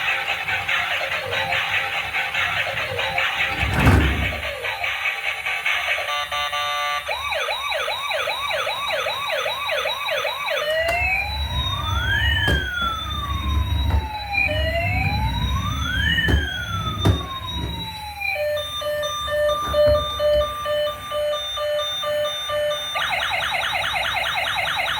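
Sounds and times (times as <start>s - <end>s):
toy vehicle siren: 0.0s - 24.9s.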